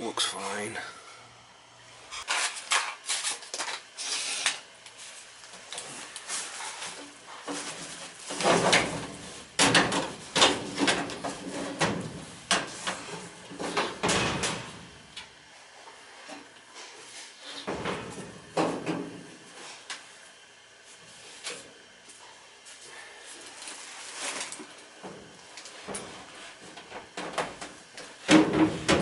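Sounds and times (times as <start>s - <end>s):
sheet metal clattering and scraping: 7.5s - 14.8s.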